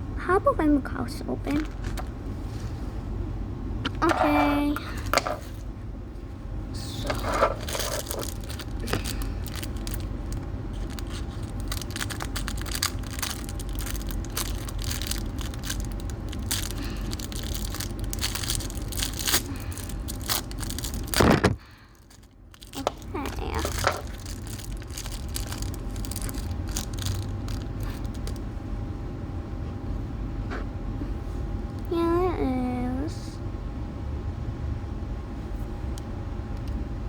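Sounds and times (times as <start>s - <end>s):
plastic packaging crinkling and tearing: 6.9s - 28.4s.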